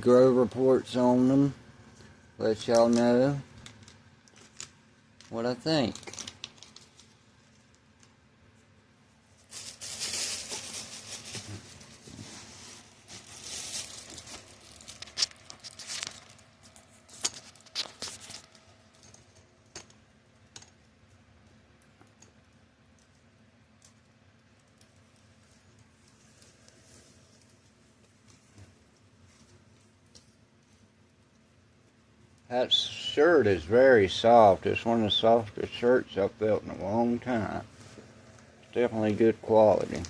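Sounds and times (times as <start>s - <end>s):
packaging crinkling and tearing: 2.6s - 8.0s, 9.3s - 20.0s.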